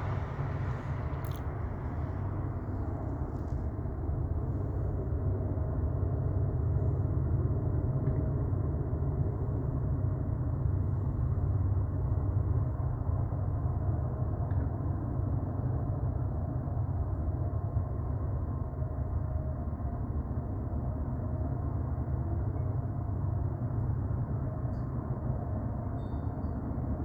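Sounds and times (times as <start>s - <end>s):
train passing rumble: 0.0s - 13.8s
faint steady tone: 25.7s - 27.0s.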